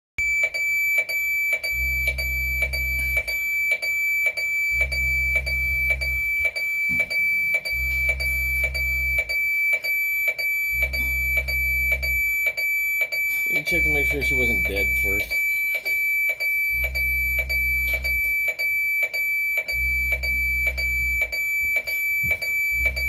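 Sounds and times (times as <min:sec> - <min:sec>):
shrill electronic alarm: 0:00.2 - 0:23.0
low vibrating buzz: 0:04.7 - 0:06.4, 0:07.0 - 0:09.3, 0:10.7 - 0:12.3.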